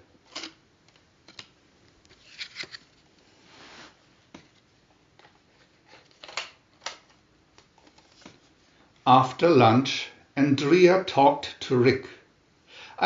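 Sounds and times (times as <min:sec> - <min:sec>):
rustling: 0:01.2 - 0:09.0.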